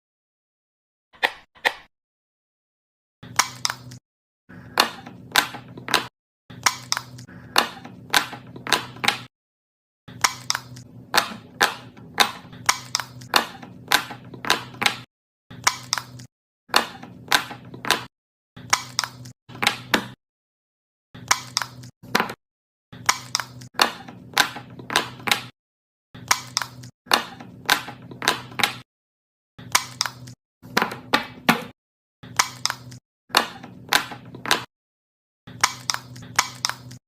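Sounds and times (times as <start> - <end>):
fidget toys popping and clicking: 10.1 - 15.0, 15.6 - 18.0, 21.2 - 21.9, 32.3 - 34.6, 35.5 - 37.0.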